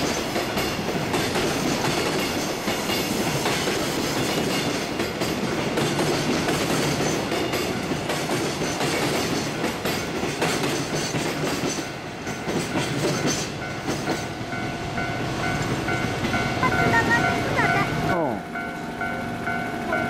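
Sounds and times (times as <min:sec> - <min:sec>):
freight train wheels clacking: 0:00.0 - 0:20.0.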